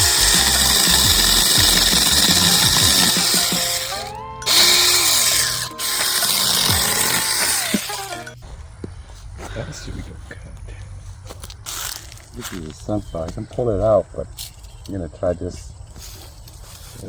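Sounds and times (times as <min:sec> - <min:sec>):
electric chainsaw whining: 0:00.0 - 0:08.4.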